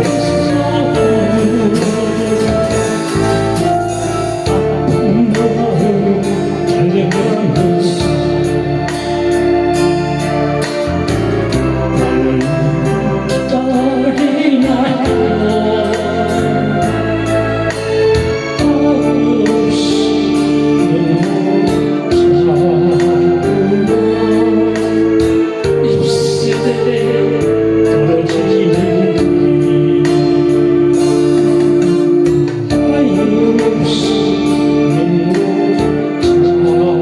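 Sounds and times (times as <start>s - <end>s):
steady beat: 0.0s - 19.2s
organ-like keyboard chords: 0.0s - 37.0s
person singing: 0.0s - 37.0s.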